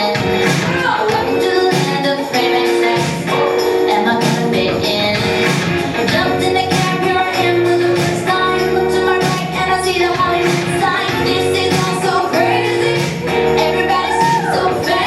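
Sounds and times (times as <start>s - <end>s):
pop song with female vocal: 0.0s - 15.0s
steady beat: 0.1s - 15.0s.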